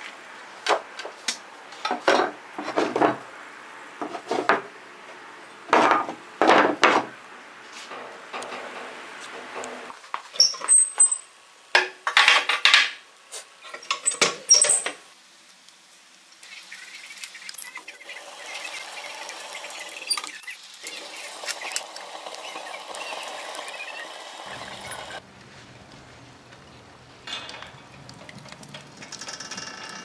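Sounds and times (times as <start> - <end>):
faint steady crackling: 14.8 - 25.2.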